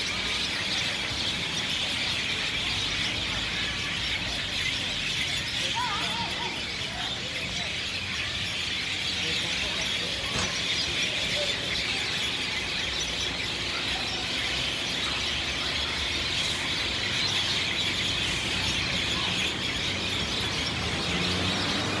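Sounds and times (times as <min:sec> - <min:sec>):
flock of birds chirping: 0:00.0 - 0:22.0.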